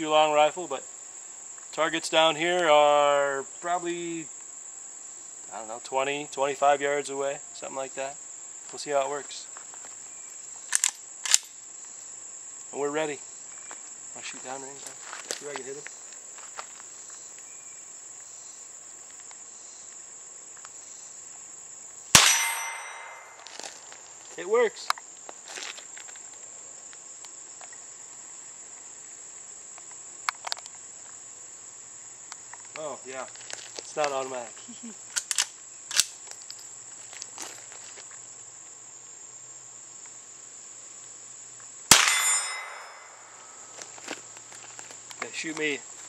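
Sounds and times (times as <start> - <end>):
crickets chirring: 0.0 - 46.0
pistol shot: 22.2 - 23.4, 41.9 - 43.3
steel target ringing: 22.2 - 23.5, 41.9 - 43.6.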